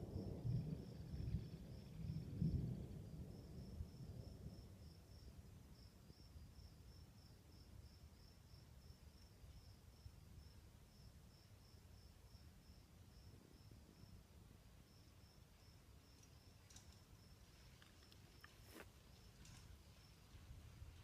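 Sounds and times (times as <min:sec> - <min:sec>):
thunder rumble: 0:00.0 - 0:05.4
cricket chirping: 0:00.0 - 0:21.0.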